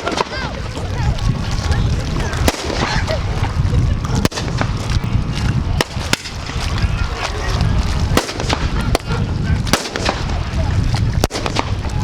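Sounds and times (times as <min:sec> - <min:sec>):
wind buffeting microphone: 0:00.0 - 0:12.0
miniature cannons firing: 0:04.2 - 0:04.7, 0:08.2 - 0:09.1, 0:09.7 - 0:10.4.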